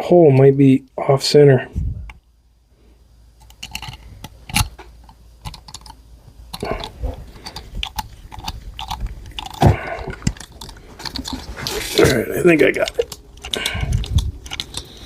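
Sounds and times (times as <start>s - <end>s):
metal tools clicking and scraping: 3.4s - 15.0s.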